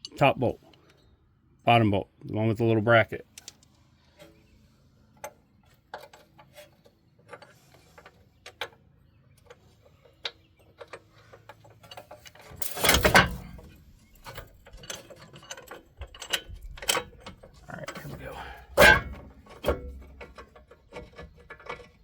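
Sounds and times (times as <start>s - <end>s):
metal tools clattering: 10.8s - 21.9s
metal tools clicking: 11.9s - 18.0s.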